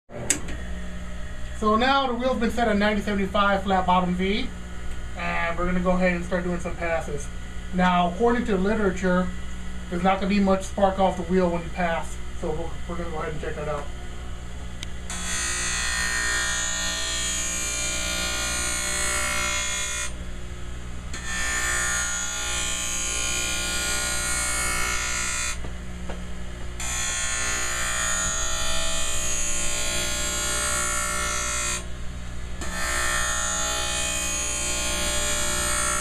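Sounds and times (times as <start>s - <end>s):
grinding wheel motor hum: 14.7s - 36.0s.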